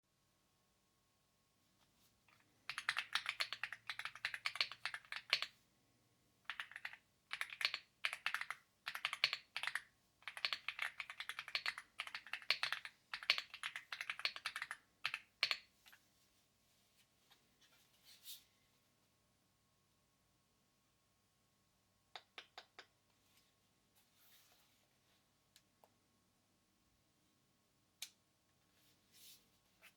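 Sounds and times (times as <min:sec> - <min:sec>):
fast typing on mechanical keyboard: 0:02.7 - 0:05.6, 0:06.5 - 0:15.7.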